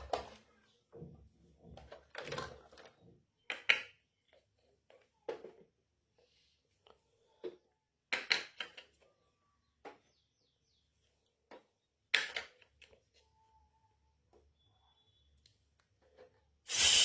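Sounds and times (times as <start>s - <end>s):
toy kitchen pieces clicking and clattering: 1.5s - 5.9s, 6.8s - 10.0s, 11.2s - 13.2s, 15.8s - 17.0s.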